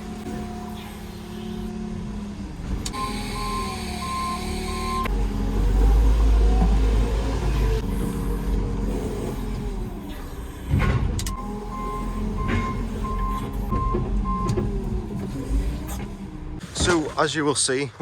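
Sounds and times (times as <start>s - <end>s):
diesel engine running: 0.0s - 17.3s
reversing alarm beeping: 2.9s - 6.4s, 11.3s - 14.6s.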